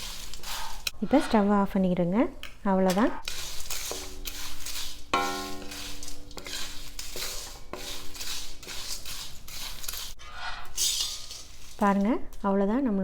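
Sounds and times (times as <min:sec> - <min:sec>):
spoon stirring dry mix in pan: 0:00.0 - 0:12.4
spoon knocking pan: 0:05.1 - 0:08.2
pan ringing: 0:05.2 - 0:06.4.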